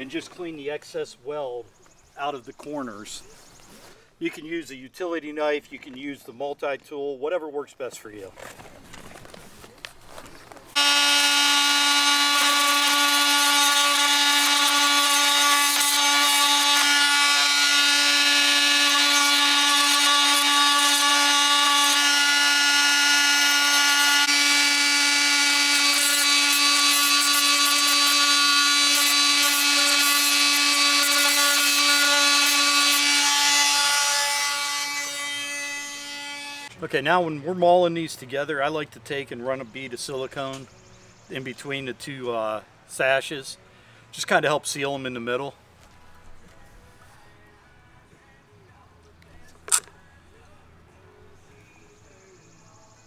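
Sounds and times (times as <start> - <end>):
oscillating multi-tool buzzing: 10.7 - 36.7.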